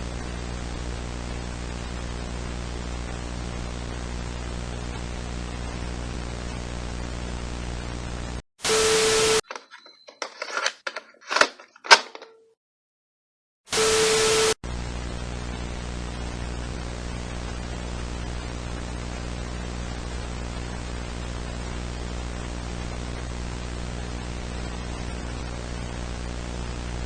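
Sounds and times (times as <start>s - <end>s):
noise burst with steady tone: 0.0s - 9.4s, 13.7s - 27.0s
buzzing static hiss: 0.0s - 9.7s, 13.7s - 27.0s
glitchy clicks and crackles: 9.2s - 12.5s.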